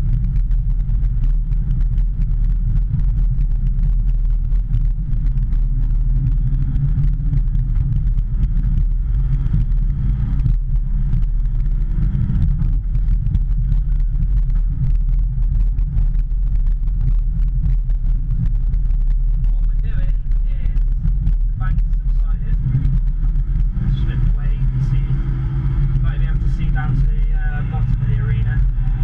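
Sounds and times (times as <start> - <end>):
excavator diesel engine droning: 21.7 - 29.0.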